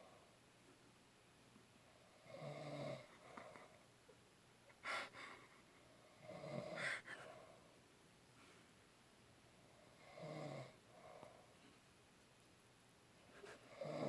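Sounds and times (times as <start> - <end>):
man snoring: 13.7 - 14.0.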